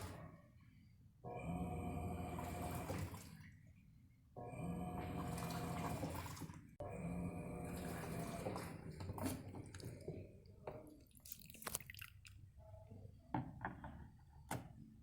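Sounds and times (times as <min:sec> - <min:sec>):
water rushing into washing machine: 0:01.3 - 0:03.6, 0:04.4 - 0:10.3
water splashes and drips: 0:10.9 - 0:12.4.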